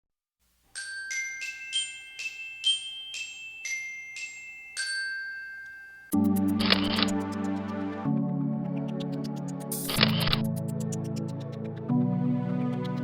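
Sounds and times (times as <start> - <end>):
glockenspiel-like melody: 0.7 - 7.1
backing music with low chords: 6.1 - 13.0.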